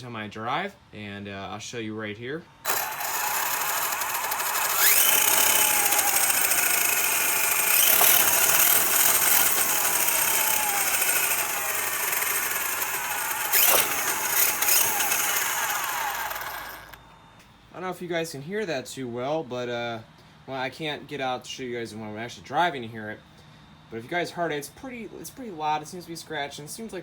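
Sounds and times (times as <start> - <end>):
scratching gear noise: 2.7 - 17.0
electric motor whine: 2.7 - 17.1.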